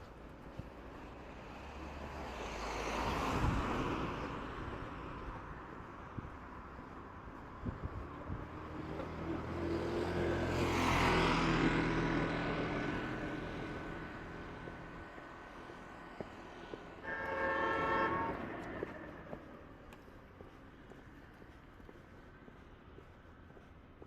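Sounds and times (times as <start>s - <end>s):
vehicle passing by: 7.0s - 19.9s
vehicle horn: 17.0s - 19.4s.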